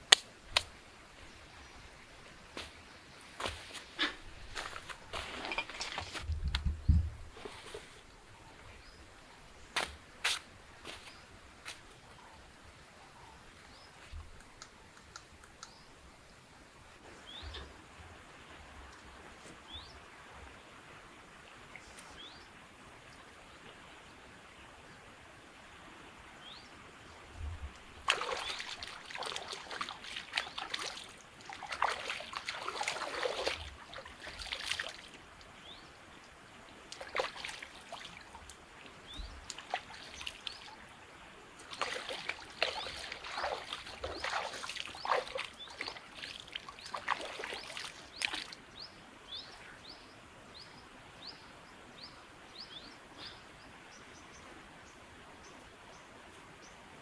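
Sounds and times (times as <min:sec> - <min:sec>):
water splashing and trickling: 0:00.0 - 0:12.3, 0:25.6 - 0:50.6
birds chirping faintly: 0:00.8 - 0:25.3, 0:26.3 - 0:57.0.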